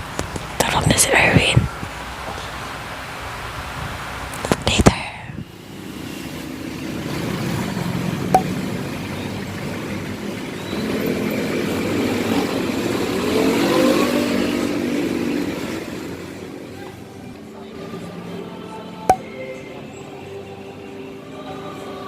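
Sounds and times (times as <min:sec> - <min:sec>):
vehicle engine accelerating: 0:05.6 - 0:19.2.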